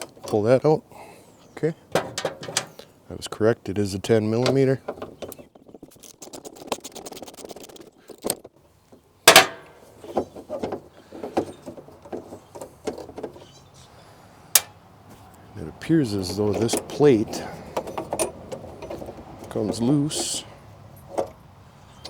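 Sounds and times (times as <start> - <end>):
sharp metal clank: 9.3 - 9.8.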